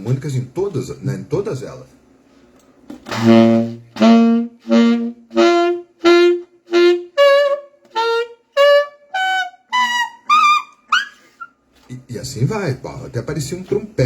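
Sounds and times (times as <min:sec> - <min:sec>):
saxophone notes climbing: 0:03.0 - 0:11.5.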